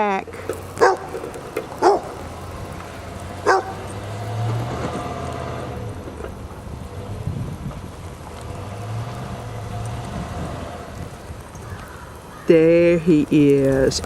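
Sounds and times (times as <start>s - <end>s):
dog barking: 0.8s - 1.1s, 1.8s - 2.2s, 3.4s - 3.8s.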